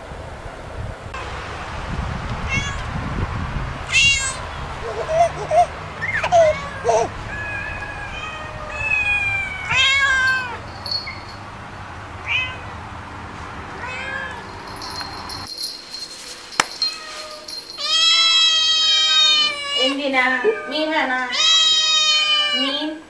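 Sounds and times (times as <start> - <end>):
cats meowing: 2.5 - 2.8, 3.9 - 10.7, 12.2 - 12.7, 13.8 - 14.5, 16.9 - 22.9.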